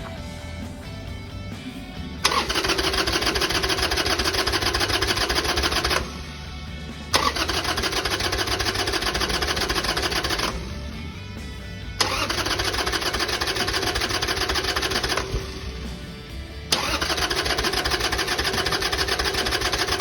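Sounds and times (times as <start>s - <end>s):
motorcycle starter cranking: 1.4s - 20.0s.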